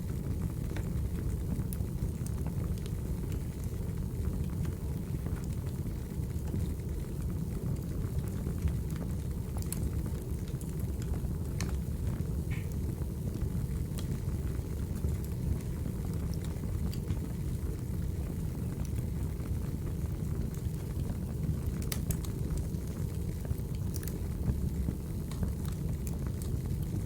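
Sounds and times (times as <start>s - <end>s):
low fire rumble: 0.0s - 27.0s
wood fire crackling and popping: 0.0s - 27.0s.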